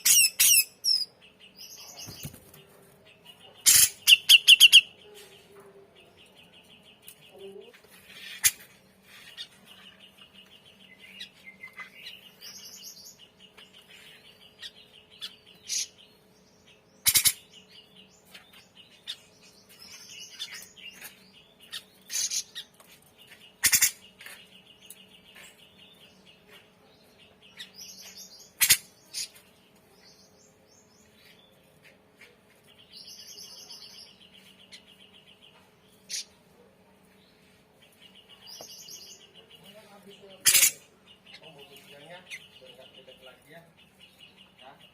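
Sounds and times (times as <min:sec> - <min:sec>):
bird trilling: 0:03.6 - 0:05.0.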